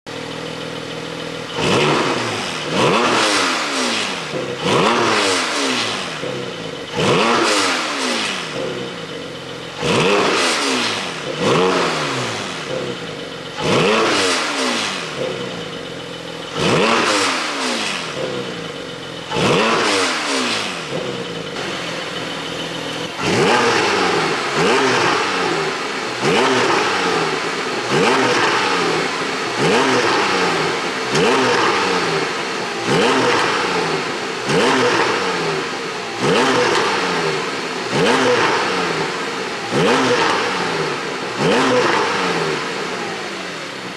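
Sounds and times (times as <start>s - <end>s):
car engine idling and revving: 0.0s - 43.9s.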